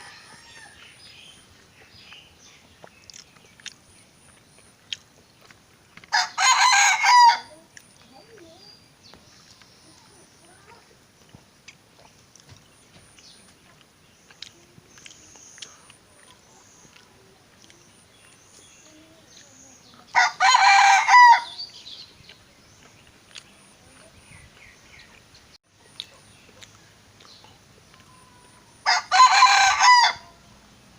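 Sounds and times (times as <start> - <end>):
rooster crowing: 0.0 - 1.0, 6.1 - 7.5, 20.1 - 21.6, 28.8 - 30.4.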